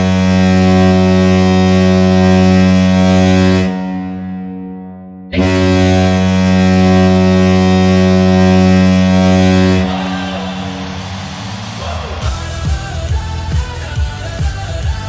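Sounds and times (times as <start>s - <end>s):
deep air horn blast: 0.0s - 14.3s.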